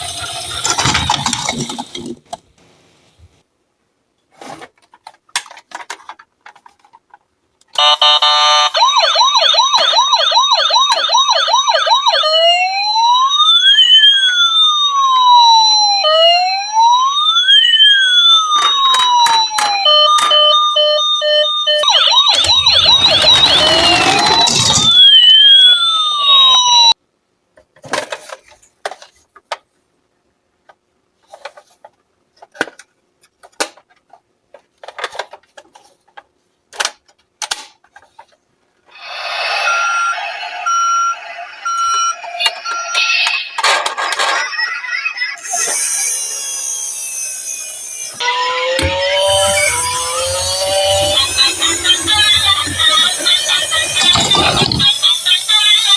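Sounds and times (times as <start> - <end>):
toy cars rolling: 0.0 - 2.4, 21.8 - 25.1, 43.2 - 55.9
emergency vehicle siren: 7.8 - 27.0, 39.1 - 43.4, 45.4 - 55.9.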